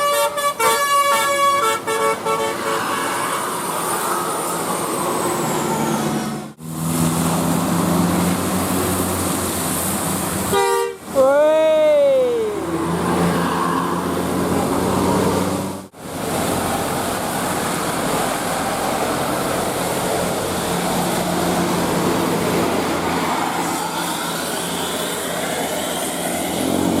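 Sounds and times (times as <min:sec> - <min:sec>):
multi-tone bus horn: 0:00.0 - 0:03.6, 0:10.5 - 0:11.3
bus engine running: 0:00.0 - 0:27.0
road traffic noise: 0:00.0 - 0:27.0.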